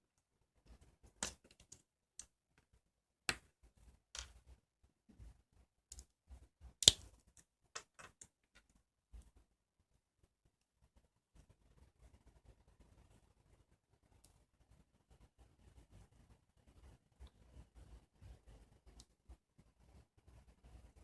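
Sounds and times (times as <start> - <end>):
slime clicking and popping: 6.8 - 7.1.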